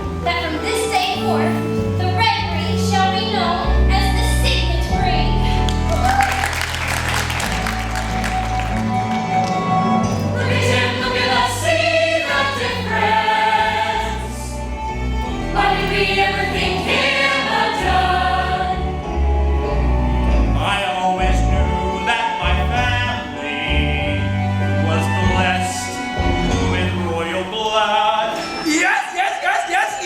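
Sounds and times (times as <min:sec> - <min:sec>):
instrumental accompaniment with bass: 0:00.0 - 0:27.4
chorus singing: 0:06.0 - 0:30.0.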